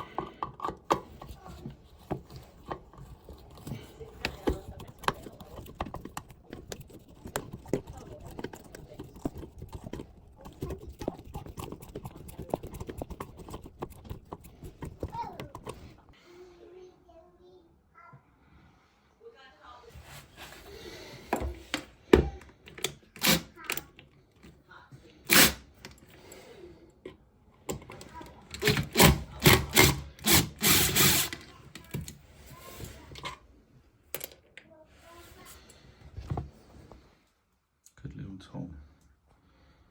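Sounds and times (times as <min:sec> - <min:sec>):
hand tool rasping: 0:00.0 - 0:16.0, 0:23.2 - 0:23.6, 0:25.3 - 0:25.6, 0:28.6 - 0:31.4.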